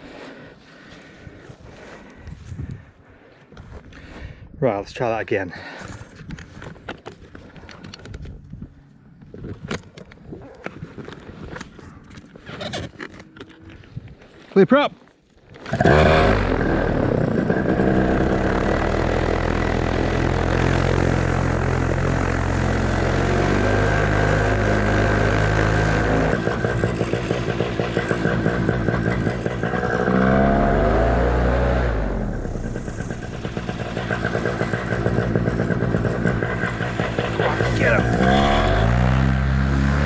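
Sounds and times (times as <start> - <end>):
paramotor engine running hard: 15.7 - 40.0.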